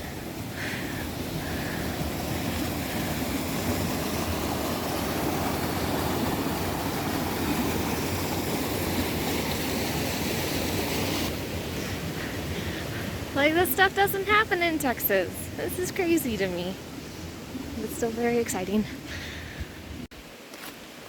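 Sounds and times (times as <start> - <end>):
waterfall rushing: 0.0 - 16.4.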